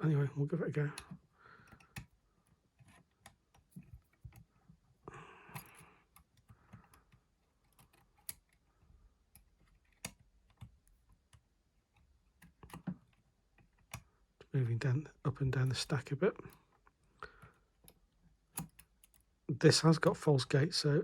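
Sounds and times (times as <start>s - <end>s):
metallic lock picking clicks: 17.8s - 19.3s.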